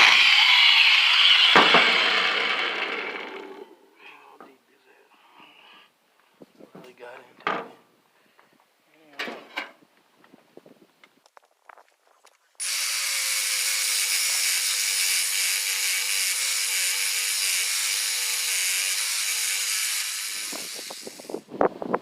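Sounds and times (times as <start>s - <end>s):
angle grinder cutting metal: 0.0s - 3.8s, 12.6s - 21.4s.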